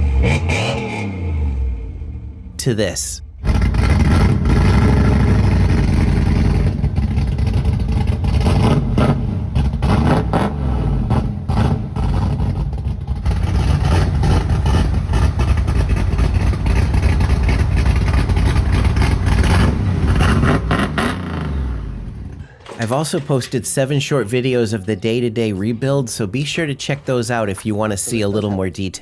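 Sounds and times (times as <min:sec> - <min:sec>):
car engine revving: 0:00.0 - 0:02.6, 0:03.2 - 0:22.5.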